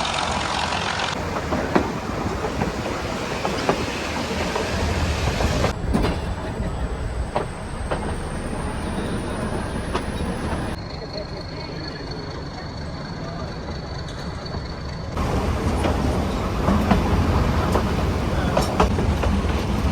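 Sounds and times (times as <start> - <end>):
train rumbling and rattling: 0.0 - 10.8, 12.0 - 19.9
wheels clicking over rail joints: 0.0 - 10.8, 15.2 - 19.9.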